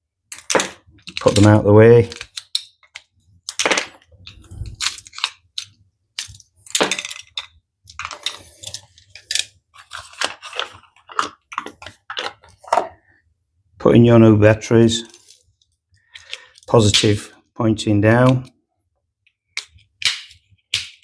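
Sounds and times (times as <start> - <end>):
batteries clicking and clattering: 0.3 - 12.9.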